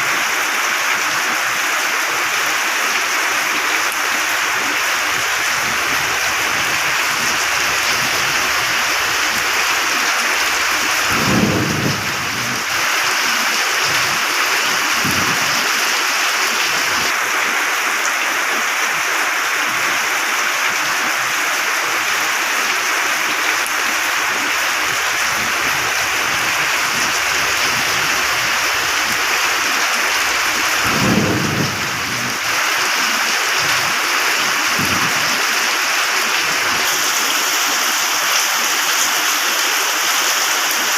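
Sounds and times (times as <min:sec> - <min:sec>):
heavy rain: 0:00.0 - 0:40.9
thunder rumbling: 0:04.0 - 0:17.1, 0:23.3 - 0:36.9.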